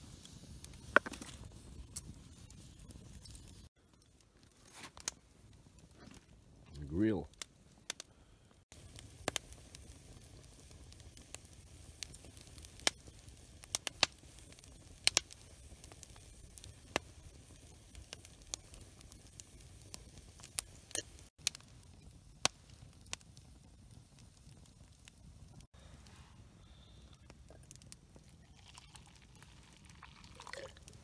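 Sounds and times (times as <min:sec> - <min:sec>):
wood fire crackling: 0:00.0 - 0:31.0.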